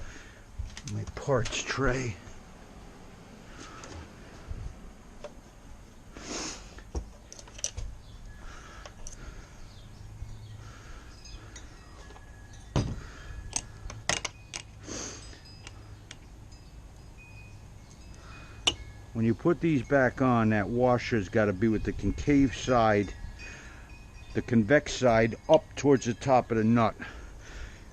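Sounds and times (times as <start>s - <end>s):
metal tools clinking: 7.1s - 7.9s, 8.8s - 9.3s, 11.2s - 16.7s, 17.8s - 19.0s.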